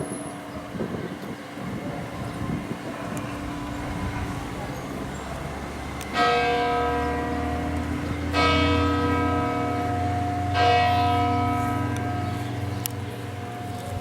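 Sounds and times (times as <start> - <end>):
church bell ringing: 2.8 - 14.0.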